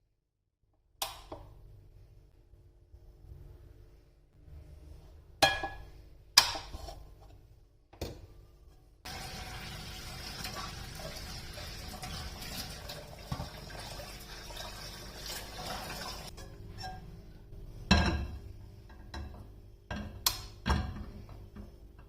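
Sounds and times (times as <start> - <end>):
water running from a tap: 9.1 - 16.3.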